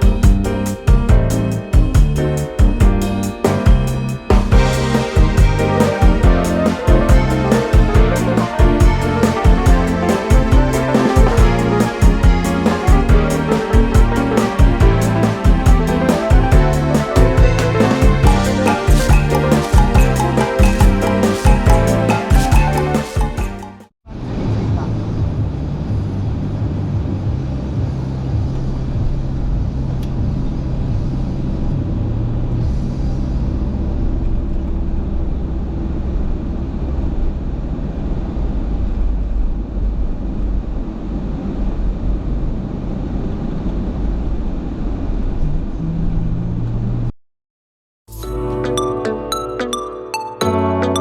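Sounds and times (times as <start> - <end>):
car engine and road noise: 24.1 - 47.2.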